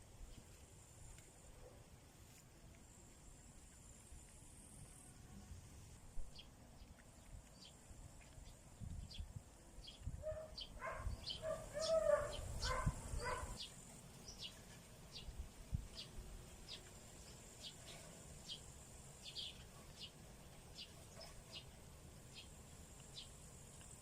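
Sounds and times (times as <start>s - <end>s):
small bird chirping: 6.3s - 24.0s.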